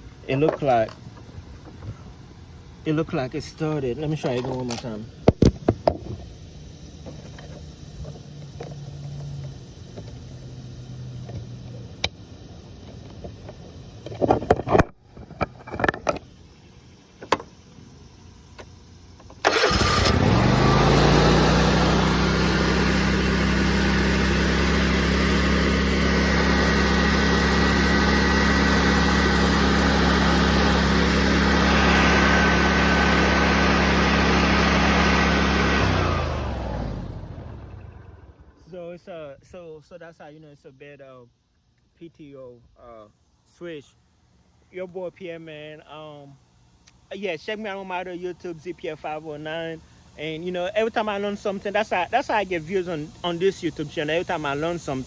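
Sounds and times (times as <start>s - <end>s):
mower engine starting and running: 19.2s - 38.6s.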